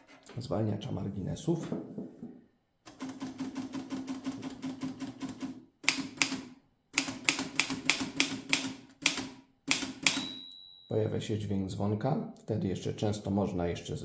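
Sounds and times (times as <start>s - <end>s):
typewriter key strikes: 7.0s - 10.5s.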